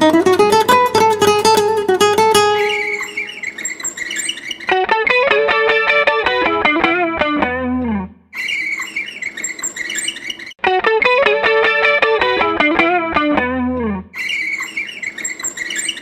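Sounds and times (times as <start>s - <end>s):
guitar playing single notes: 0.0s - 3.6s, 4.8s - 8.1s, 10.6s - 14.1s.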